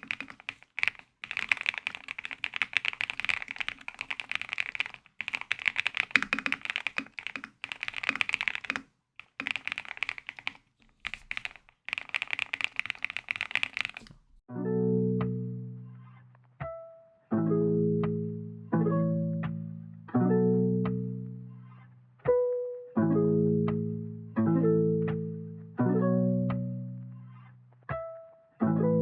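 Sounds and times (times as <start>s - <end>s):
mechanical keyboard key clicks: 0.0s - 14.2s.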